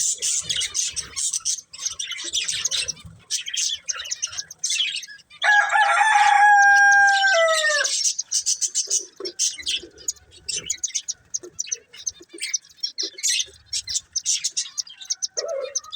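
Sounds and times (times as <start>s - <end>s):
budgerigars chirping: 0.0s - 15.9s
rooster crowing: 5.4s - 8.0s, 15.0s - 15.9s.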